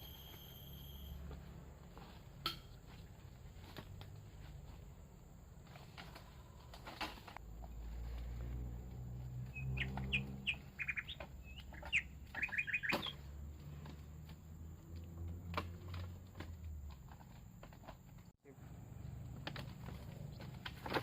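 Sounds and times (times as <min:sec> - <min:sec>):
bird chirping: 0:09.4 - 0:13.3.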